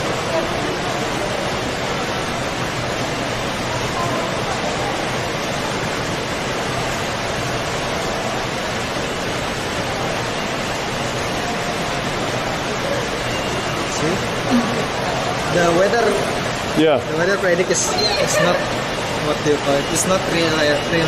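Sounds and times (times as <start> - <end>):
heavy rain pouring: 0.0 - 21.0.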